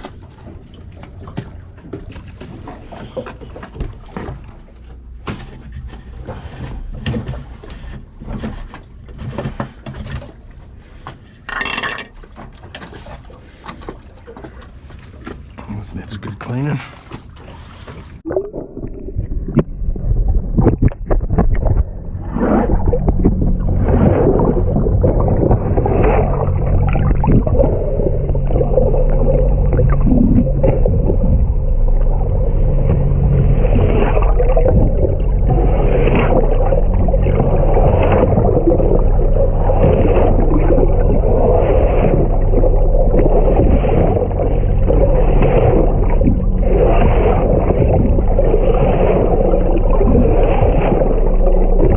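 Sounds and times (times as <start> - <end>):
water slapping against hull: 0.0 - 11.5, 12.1 - 51.9
boat engine humming: 0.0 - 51.9.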